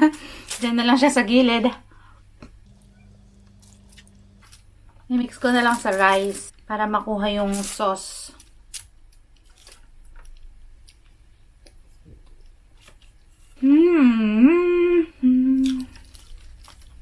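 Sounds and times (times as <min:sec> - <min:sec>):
woman humming: 0:13.6 - 0:15.9.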